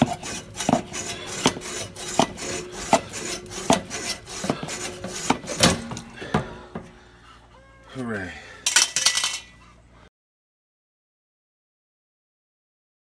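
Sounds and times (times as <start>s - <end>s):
hacksaw cutting metal pipe: 0.0s - 6.3s.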